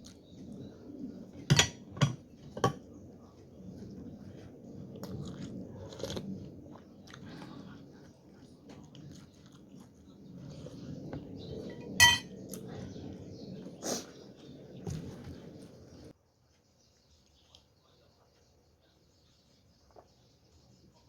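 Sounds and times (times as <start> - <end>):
person chewing: 4.9 - 10.2
spoon clinking on dish: 11.7 - 12.3.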